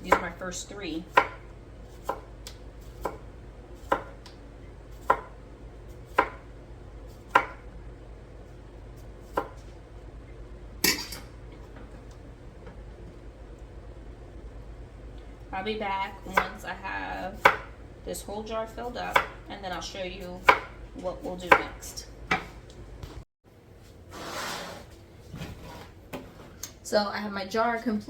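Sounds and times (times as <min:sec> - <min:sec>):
knife chopping on cutting board: 0:02.0 - 0:03.2, 0:03.8 - 0:04.3, 0:04.9 - 0:05.4, 0:06.1 - 0:06.4, 0:07.3 - 0:07.6, 0:09.2 - 0:09.6, 0:17.4 - 0:17.7, 0:20.4 - 0:20.8.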